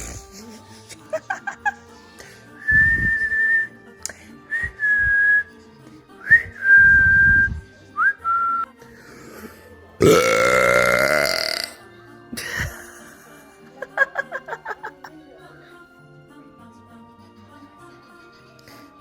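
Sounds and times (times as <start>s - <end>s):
person whistling a tune: 2.6s - 3.8s, 4.5s - 5.6s, 6.2s - 8.7s.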